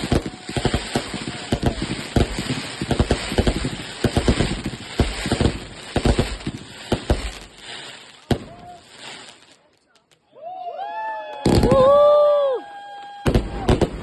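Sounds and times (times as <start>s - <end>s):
fireworks hiss: 0.0s - 9.7s
fireworks banging and crackling: 0.0s - 10.2s, 11.4s - 12.0s, 13.2s - 14.0s.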